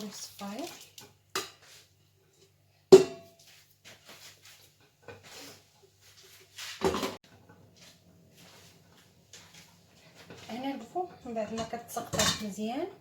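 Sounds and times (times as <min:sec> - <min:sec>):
kitchenware clanking: 0:02.9 - 0:03.4, 0:10.3 - 0:13.0.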